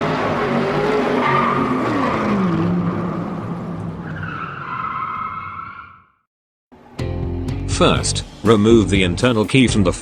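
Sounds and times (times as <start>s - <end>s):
car engine: 0.0s - 5.2s
high-pitched tyre squeal: 0.4s - 3.0s, 4.0s - 6.2s.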